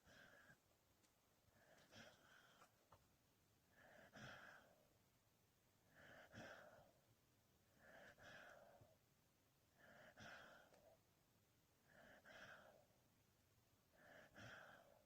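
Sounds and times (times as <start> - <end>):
dog breathing slowly: 0.0 - 0.6, 1.5 - 2.8, 3.7 - 4.9, 5.9 - 7.0, 7.7 - 9.0, 9.7 - 11.0, 11.8 - 13.0, 13.9 - 15.0.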